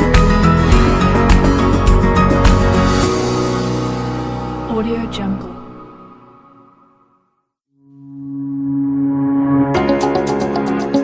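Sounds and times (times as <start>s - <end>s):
music with steady beat: 0.0s - 4.1s, 9.8s - 11.0s.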